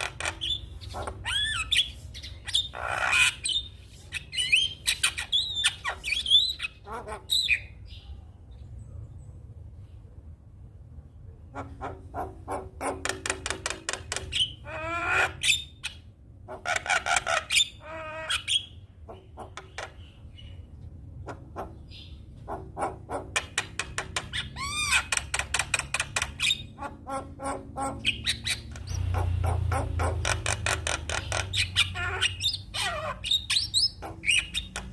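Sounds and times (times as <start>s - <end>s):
myna clicks and chattering: 22.5s - 26.6s.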